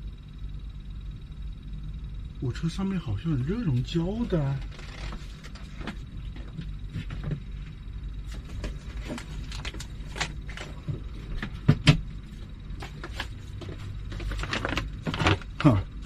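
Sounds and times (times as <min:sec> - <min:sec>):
steady low hum: 0:00.0 - 0:16.0
items clattering and knocking: 0:12.8 - 0:15.8.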